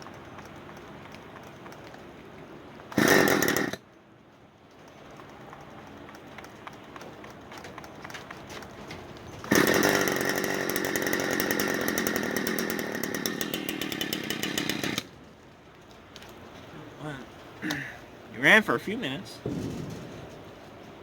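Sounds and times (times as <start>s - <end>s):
chainsaw idling and revving: 2.9s - 3.8s, 9.5s - 15.1s.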